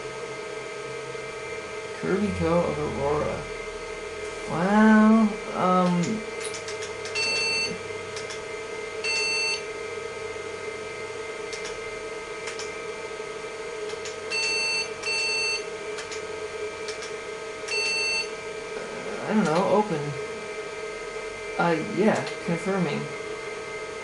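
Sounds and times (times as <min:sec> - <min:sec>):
computer humming: 0:00.0 - 0:24.0
short electronic beeps: 0:07.2 - 0:07.8, 0:09.0 - 0:09.6, 0:14.3 - 0:15.6, 0:17.7 - 0:18.3.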